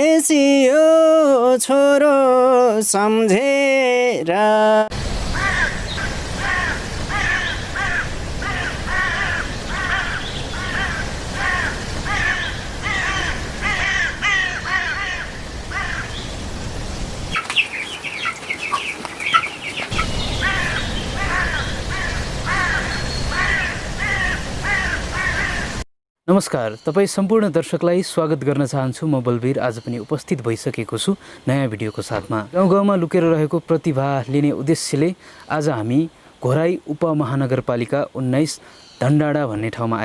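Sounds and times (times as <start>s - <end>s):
harsh caw-like bird calls: 5.3s - 16.3s, 17.4s - 25.8s
thin high bird calls: 17.3s - 25.6s.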